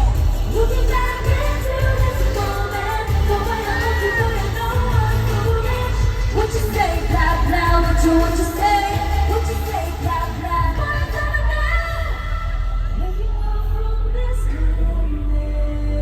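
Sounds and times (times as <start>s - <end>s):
pop song with vocals and heavy bass: 0.0s - 16.0s.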